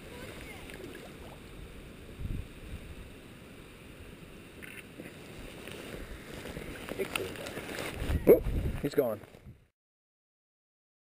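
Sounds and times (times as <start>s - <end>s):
flowing creek: 0.0s - 9.4s
wind rumble on microphone: 1.4s - 3.2s, 7.8s - 9.7s.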